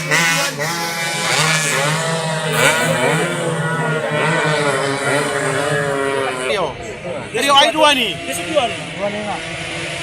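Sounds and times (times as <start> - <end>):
racing motorcycles revving past: 0.0 - 10.0.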